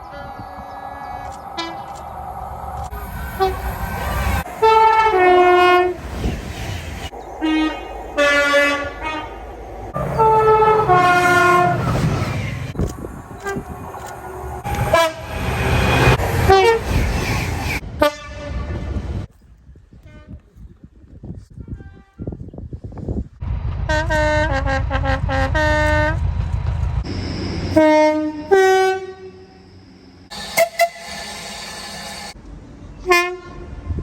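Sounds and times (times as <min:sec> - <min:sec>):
train rumbling: 0:00.0 - 0:19.3, 0:23.2 - 0:34.0
two-tone train horn: 0:03.4 - 0:03.7, 0:04.6 - 0:06.0, 0:07.4 - 0:09.4, 0:10.0 - 0:11.9, 0:13.4 - 0:13.7, 0:14.6 - 0:15.6, 0:16.4 - 0:16.9, 0:18.0 - 0:18.9, 0:23.9 - 0:26.2, 0:27.7 - 0:29.6, 0:30.3 - 0:32.4, 0:33.0 - 0:34.0.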